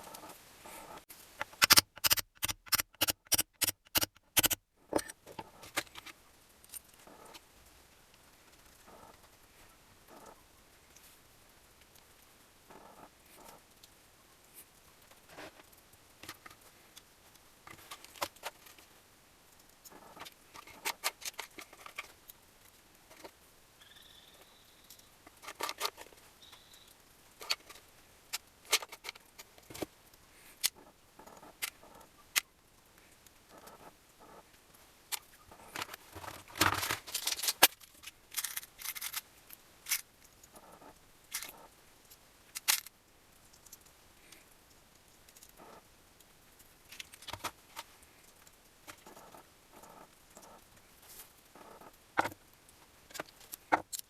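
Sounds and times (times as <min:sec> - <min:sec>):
tools clicking and clinking: 0:01.4 - 0:05.2, 0:36.7 - 0:39.2, 0:42.6 - 0:42.9.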